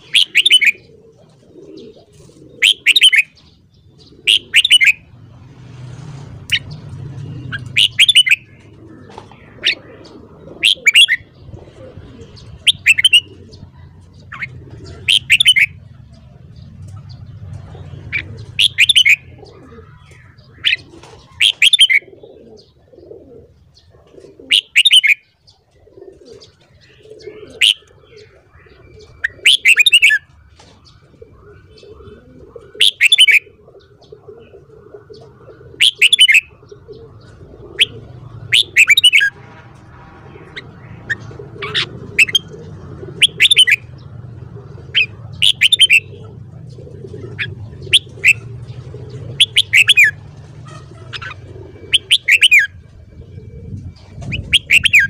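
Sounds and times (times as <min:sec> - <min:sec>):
bird singing: 0:00.0 - 0:55.0.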